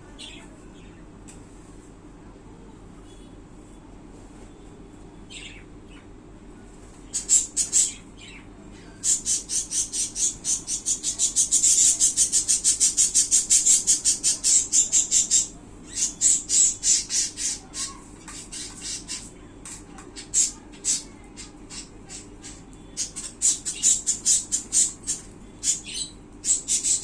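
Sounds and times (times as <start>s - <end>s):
budgerigar chirping: 9.0s - 17.9s, 20.2s - 27.0s.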